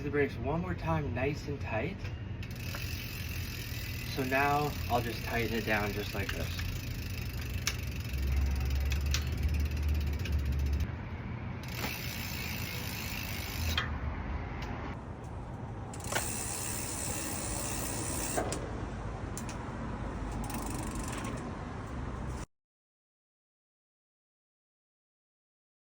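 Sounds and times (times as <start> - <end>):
ratchet clicking: 2.4 - 10.9, 11.6 - 13.9, 15.9 - 18.6, 20.3 - 21.5
sharp ticks: 2.4 - 10.9.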